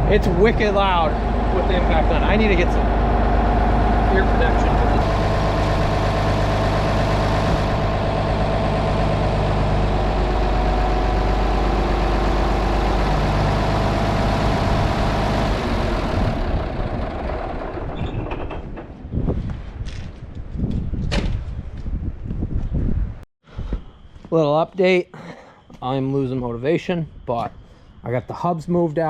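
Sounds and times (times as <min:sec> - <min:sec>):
engine idling: 0:00.0 - 0:18.8.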